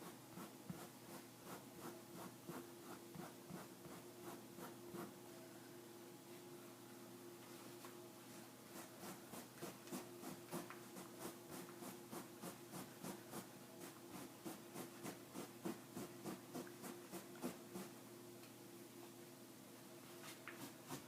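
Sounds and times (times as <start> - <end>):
cloth scrubbing back and forth: 8.7 - 17.9.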